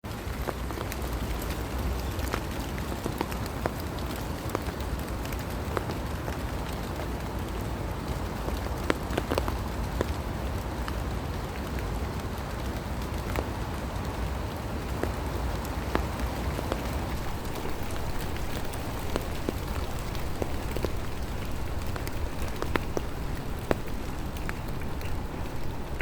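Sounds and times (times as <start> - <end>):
raindrops ticking and plinking: 0.1 - 26.0
steady rain hiss: 0.1 - 26.0.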